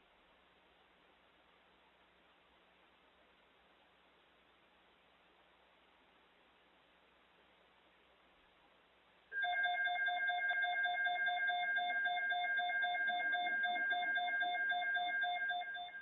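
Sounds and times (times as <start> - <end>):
electronic alert tone: 9.4 - 16.0.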